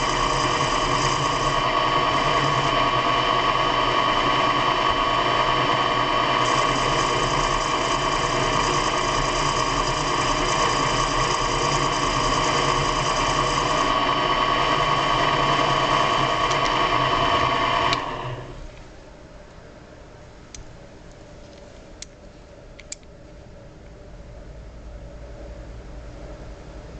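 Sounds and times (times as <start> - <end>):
electric motor whining: 0.0 - 18.6.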